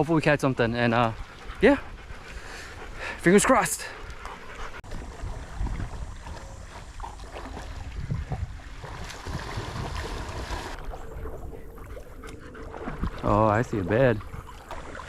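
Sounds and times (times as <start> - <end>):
wind buffeting microphone: 4.1 - 14.6.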